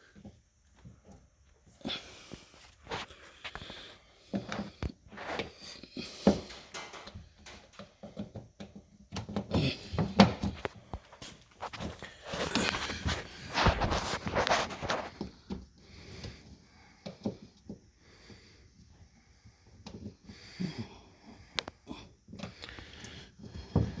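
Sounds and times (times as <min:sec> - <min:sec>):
door handle parts clicking and scraping: 0:06.2 - 0:09.4.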